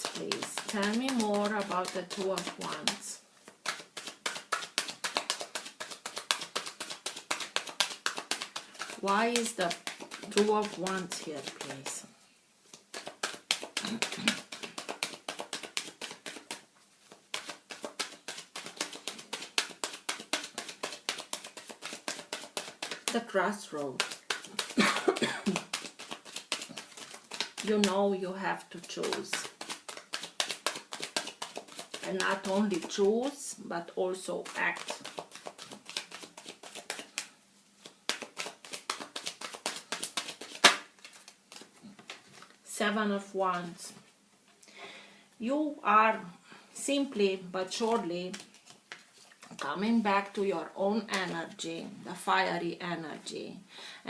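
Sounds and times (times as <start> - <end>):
cards being shuffled: 0.0 - 12.1, 12.7 - 28.2, 28.8 - 33.4, 34.3 - 42.6, 47.8 - 51.6.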